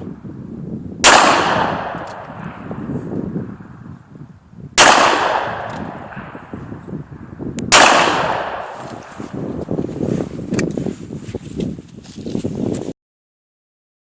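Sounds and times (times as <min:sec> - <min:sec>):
revolver shots with echo: 0:01.0 - 0:02.7, 0:04.8 - 0:06.5, 0:07.7 - 0:08.7.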